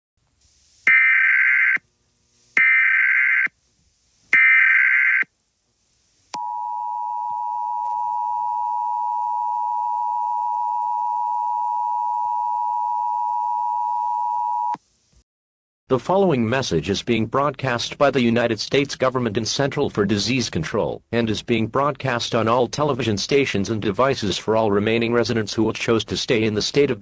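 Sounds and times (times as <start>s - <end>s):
screeching data bursts: 0.9s - 1.8s, 2.6s - 3.5s, 4.4s - 5.3s.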